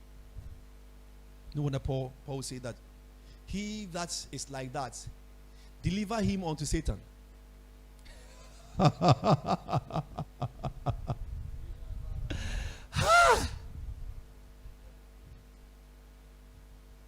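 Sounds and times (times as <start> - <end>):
breathy rush: 12.3 - 13.6
man's loud exclamation: 12.9 - 13.6
man's rapid vocal bursts: 12.9 - 13.6.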